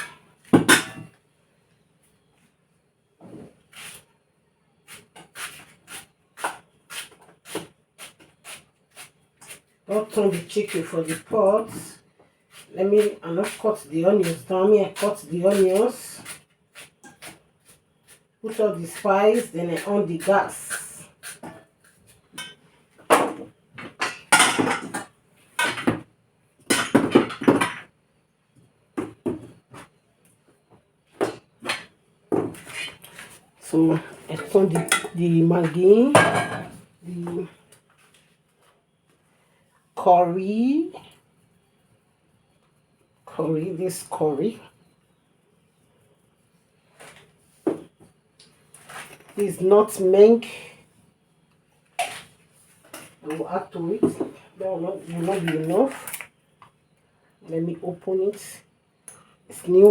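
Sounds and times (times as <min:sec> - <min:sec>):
pots and utensils knocking and rattling: 0:00.0 - 0:01.1, 0:23.2 - 0:26.0, 0:26.7 - 0:27.9, 0:36.2 - 0:36.8.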